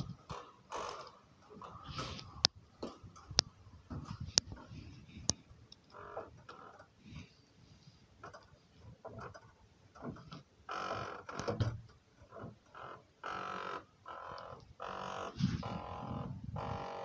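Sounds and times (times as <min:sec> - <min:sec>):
steel door creaking on hinges: 0:00.0 - 0:04.9, 0:09.1 - 0:17.0.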